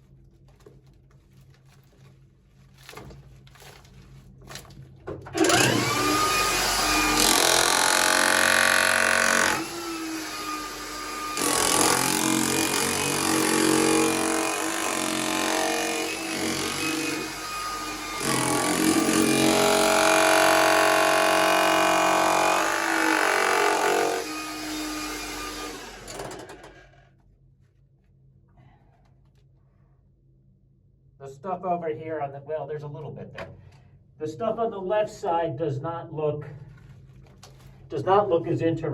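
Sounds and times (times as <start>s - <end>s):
jackhammer breaking rock: 5.4s - 27.0s.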